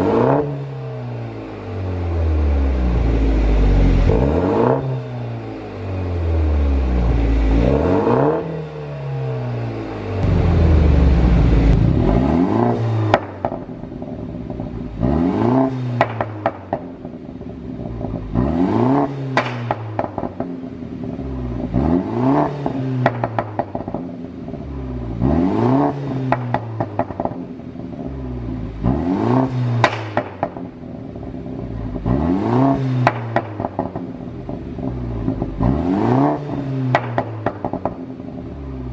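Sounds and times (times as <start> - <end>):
car engine revving: 0.0 - 38.9
exhaust pops and crackles: 13.1 - 14.9, 16.0 - 18.4, 19.3 - 20.6, 23.0 - 24.2, 26.3 - 28.0, 29.8 - 32.1, 33.0 - 35.8, 36.8 - 38.4.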